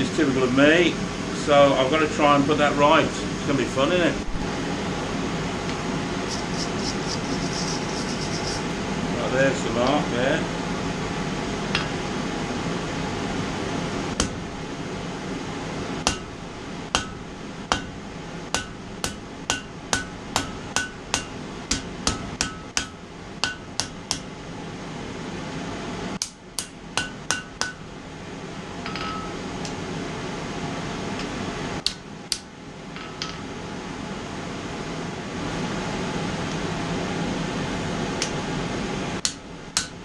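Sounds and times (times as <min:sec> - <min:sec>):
hammer striking steel on anvil: 0:16.0 - 0:16.3, 0:16.9 - 0:24.3, 0:26.2 - 0:27.8, 0:28.8 - 0:29.4, 0:39.2 - 0:40.0.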